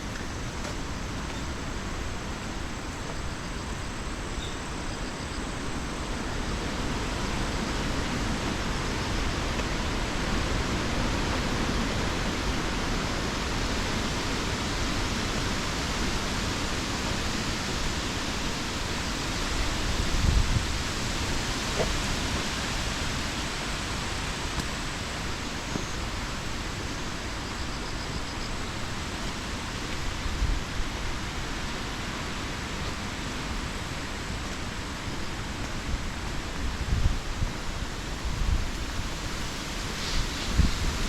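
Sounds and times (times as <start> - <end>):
steady hiss of rain: 0.0 - 41.0
wind buffeting microphone: 6.1 - 27.3, 29.1 - 41.0.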